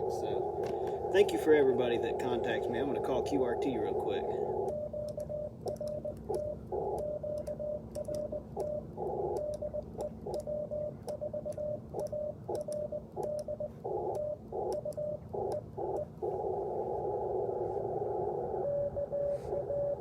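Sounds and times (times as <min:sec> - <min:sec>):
receiver hiss: 0:00.0 - 0:11.7
morse code tone: 0:00.4 - 0:16.7, 0:18.1 - 0:20.0.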